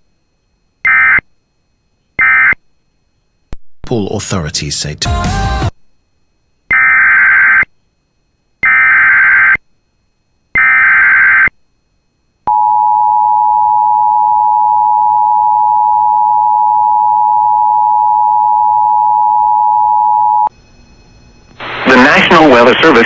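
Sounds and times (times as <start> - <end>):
steady attention tone: 3.8 - 5.2.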